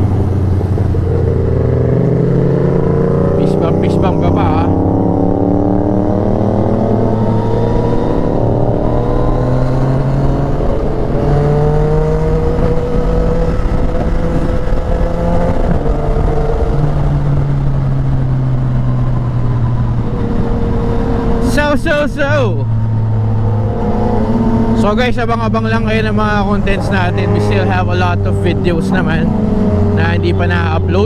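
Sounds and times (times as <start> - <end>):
motorcycle engine running: 0.0 - 31.0.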